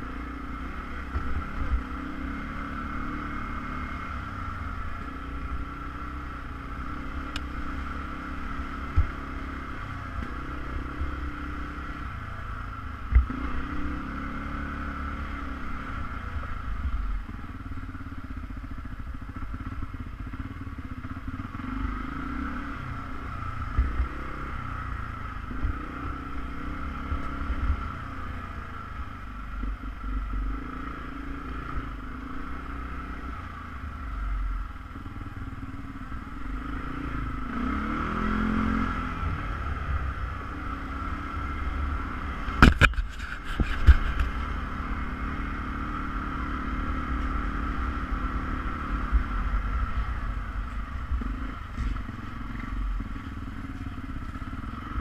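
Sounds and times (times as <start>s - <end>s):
atv engine running: 0.0s - 55.0s
sharp thump: 42.5s - 44.3s.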